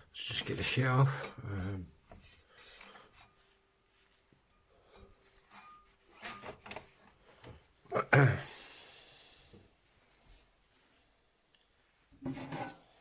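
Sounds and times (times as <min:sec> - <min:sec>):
cloth wiping a surface: 0:01.6 - 0:04.3.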